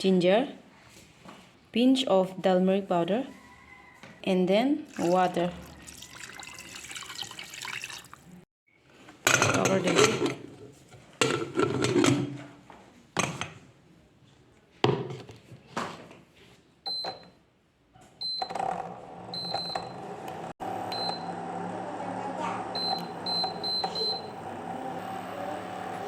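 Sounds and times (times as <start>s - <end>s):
cooktop touch buttons beeping: 22.8s - 24.3s.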